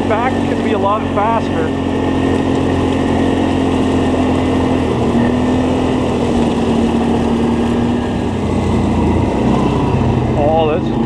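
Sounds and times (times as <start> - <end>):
atv engine running: 0.0 - 11.0
riding noise rush: 0.0 - 11.0.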